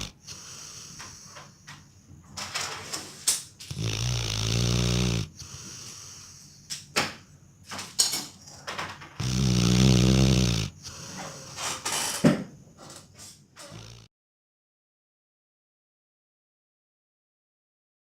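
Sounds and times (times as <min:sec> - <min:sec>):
dog snoring: 0:00.0 - 0:01.7, 0:02.7 - 0:06.7, 0:09.0 - 0:12.2, 0:13.6 - 0:14.1
soft breathing: 0:00.0 - 0:02.1, 0:04.7 - 0:06.8, 0:10.7 - 0:12.0.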